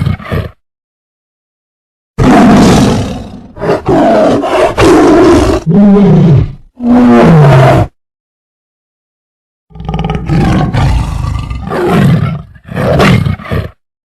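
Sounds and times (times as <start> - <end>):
large animal roaring: 2.2 - 8.0, 9.7 - 13.8.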